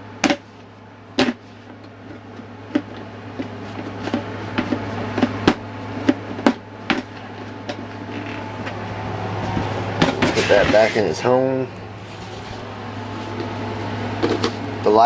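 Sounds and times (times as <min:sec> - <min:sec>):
utensils knocking and clattering: 0:09.4 - 0:11.0.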